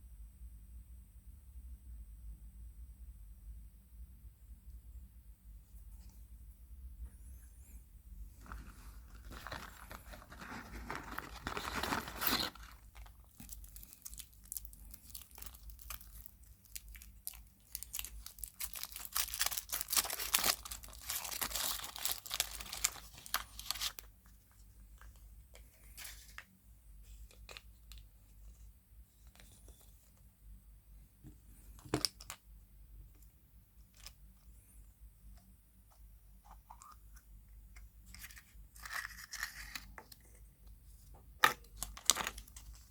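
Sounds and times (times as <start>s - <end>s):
wrapper tearing and crinkling: 8.4s - 24.1s.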